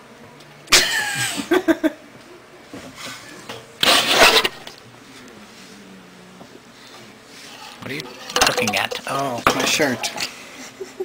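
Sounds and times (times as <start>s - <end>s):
woman laughing: 0.8s - 2.0s, 10.6s - 11.0s.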